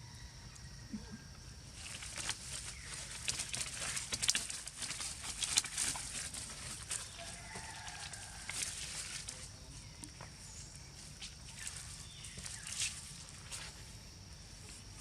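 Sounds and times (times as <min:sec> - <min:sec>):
rustling and clicking: 0:01.8 - 0:09.4.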